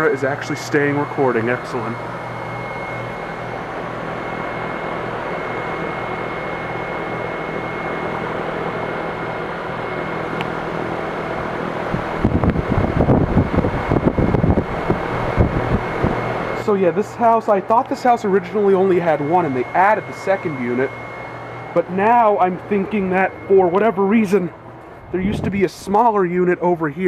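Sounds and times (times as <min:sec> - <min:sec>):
heat pump fan rush and hum: 0:00.0 - 0:27.0
high steady whine: 0:00.0 - 0:27.0
wind buffeting microphone: 0:11.8 - 0:16.4, 0:25.0 - 0:26.0.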